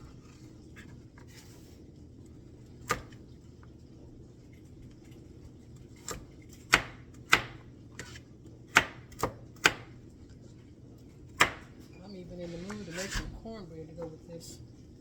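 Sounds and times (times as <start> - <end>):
knife chopping on cutting board: 2.8 - 3.2, 6.0 - 9.9, 11.4 - 11.8.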